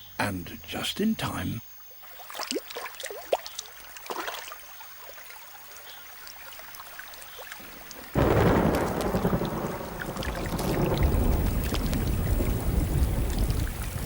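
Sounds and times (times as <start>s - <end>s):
rain drips and ticks: 2.6s - 14.0s
heavy rain rushing: 7.8s - 14.0s
thunder: 8.1s - 14.0s.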